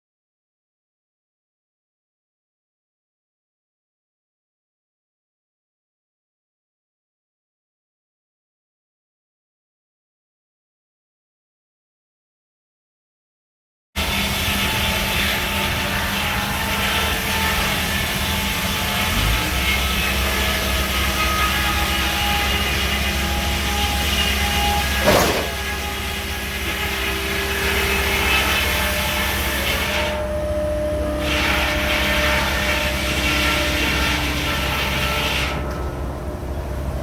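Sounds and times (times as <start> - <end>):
sawmill engine drone: 14.0 - 37.0.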